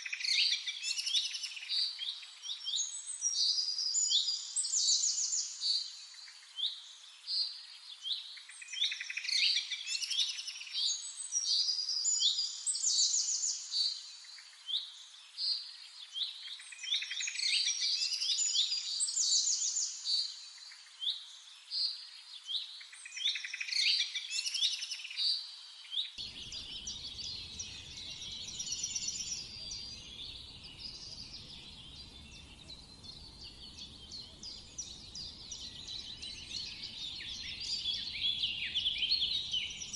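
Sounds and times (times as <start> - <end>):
songbirds chirping and singing: 0.0 - 39.9
steady low background noise: 26.2 - 39.9.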